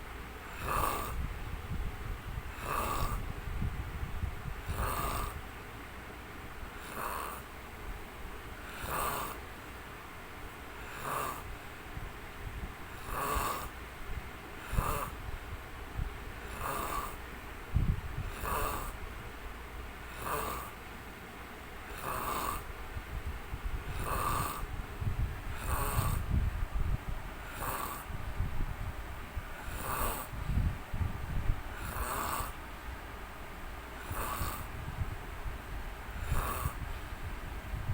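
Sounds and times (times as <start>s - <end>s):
man snoring: 0.5s - 1.3s, 2.5s - 3.3s, 4.6s - 5.5s, 6.8s - 7.5s, 8.6s - 9.4s, 10.8s - 11.5s, 12.9s - 13.8s, 14.6s - 15.2s, 16.4s - 17.2s, 18.2s - 19.0s, 20.0s - 20.8s, 21.9s - 22.8s, 23.9s - 24.7s, 25.5s - 26.4s, 27.4s - 28.2s, 29.5s - 30.4s, 31.7s - 32.6s, 34.0s - 34.8s, 36.2s - 36.9s.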